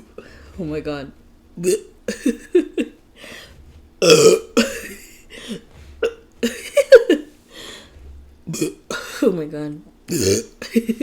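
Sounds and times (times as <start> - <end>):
woman burping: 1.6 - 2.8, 4.0 - 5.2, 8.5 - 9.1, 10.1 - 11.0.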